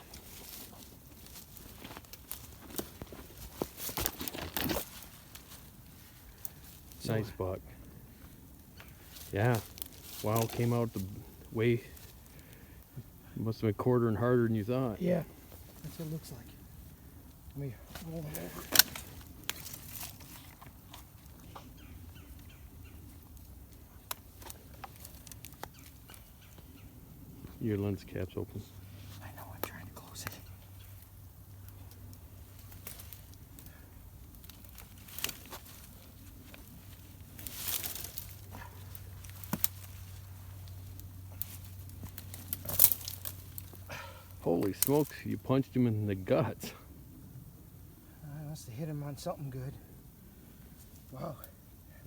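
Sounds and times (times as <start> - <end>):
dry leaves crackling and rustling: 0.0 - 12.6, 17.6 - 26.6, 29.2 - 45.6.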